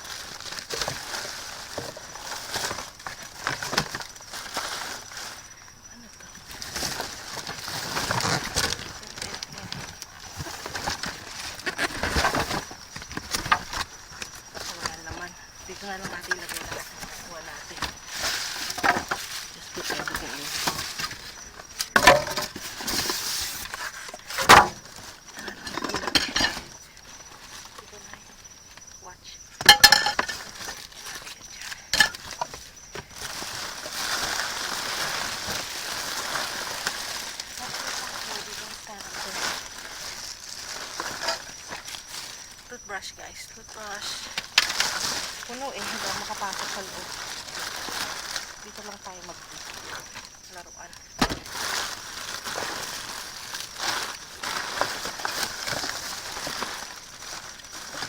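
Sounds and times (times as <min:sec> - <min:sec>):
packages and bags rustling: 0:00.0 - 0:58.0
items knocking in a dumpster: 0:19.9 - 0:23.2, 0:24.2 - 0:26.7.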